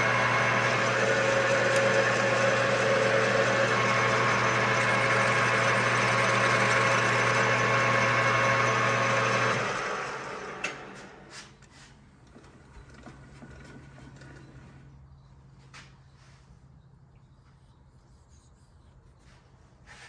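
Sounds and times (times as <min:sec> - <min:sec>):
metal lathe running: 0:00.0 - 0:11.2.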